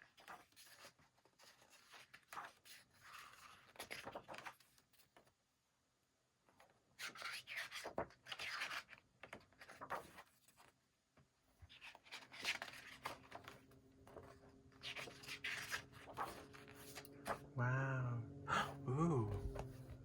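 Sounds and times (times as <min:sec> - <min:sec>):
paper rustling and rubbing: 0:00.0 - 0:05.2, 0:07.0 - 0:10.7, 0:11.6 - 0:17.4.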